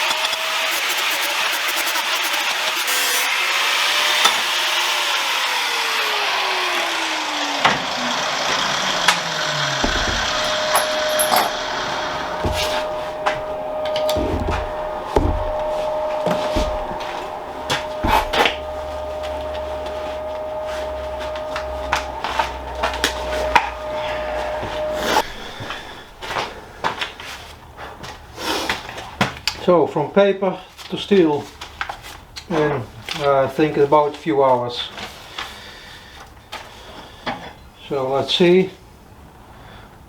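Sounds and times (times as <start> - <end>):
tool scraping steel: 8.7 - 26.6
steady hum: 8.9 - 26.6
steel knocks and taps: 9.8 - 18.9.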